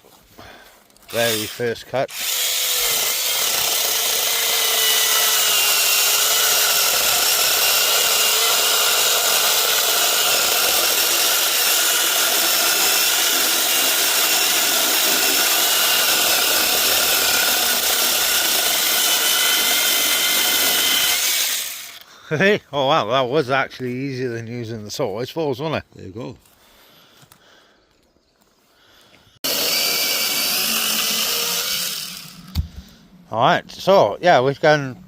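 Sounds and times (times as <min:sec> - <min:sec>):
electric chainsaw cutting wood: 0:01.1 - 0:22.0, 0:29.4 - 0:32.7.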